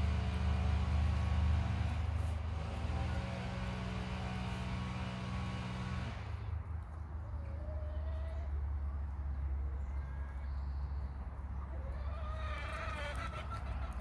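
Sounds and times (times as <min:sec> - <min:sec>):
motor engine droning: 0:00.0 - 0:06.6.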